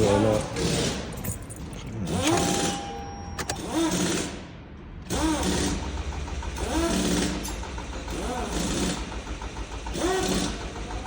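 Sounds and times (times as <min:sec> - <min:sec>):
starter cranking engine: 0:05.1 - 0:11.0.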